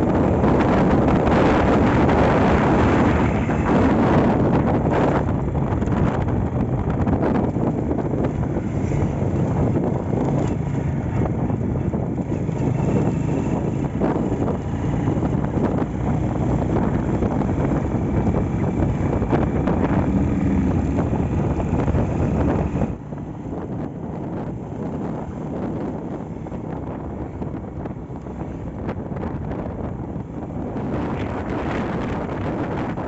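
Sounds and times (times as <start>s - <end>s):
motorcycle engine running: 0.0s - 33.0s
wind noise on microphone: 0.0s - 33.0s.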